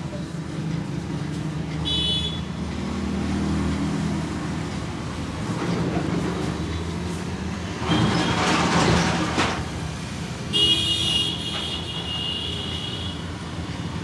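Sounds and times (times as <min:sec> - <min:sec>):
vehicle engines running: 0:00.0 - 0:10.5
vehicle horn steady tone: 0:01.8 - 0:02.6, 0:10.5 - 0:13.3
vehicle passing: 0:02.6 - 0:07.8.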